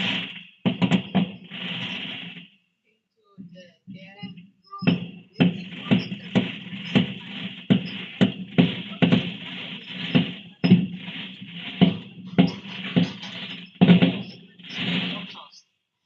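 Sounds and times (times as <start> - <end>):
music with steady beat: 0.0 - 2.4, 3.9 - 15.3
sharp percussive hits: 0.0 - 2.4, 4.8 - 15.4
constant bright hiss: 0.0 - 2.5, 4.9 - 15.5.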